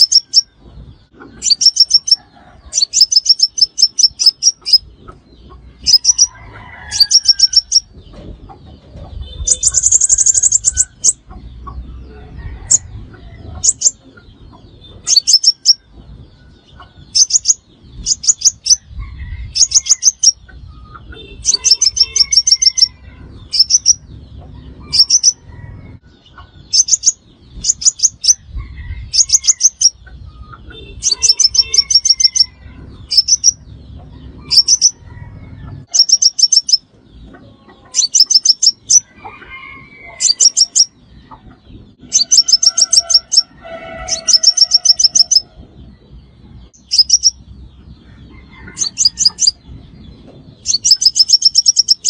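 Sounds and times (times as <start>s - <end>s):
sunbird calls: 0.0s - 18.9s, 19.5s - 25.6s, 29.1s - 35.0s.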